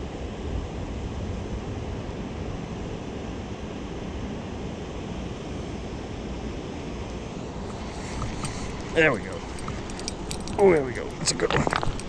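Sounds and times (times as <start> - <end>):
fast river water rushing: 7.2 - 12.0.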